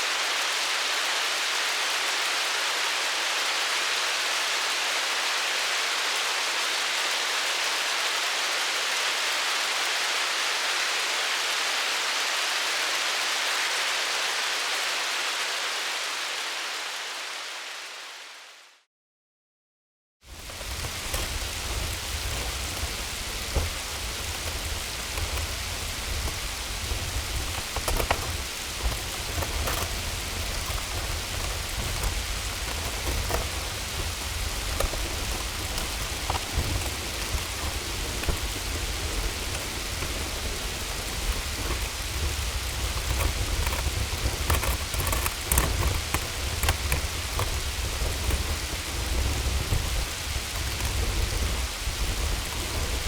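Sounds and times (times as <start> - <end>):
hail and rain falling: 0.0 - 18.5, 20.2 - 53.0
continuous low rumble: 20.3 - 53.0
hailstones clicking on hard surfaces: 20.3 - 53.0.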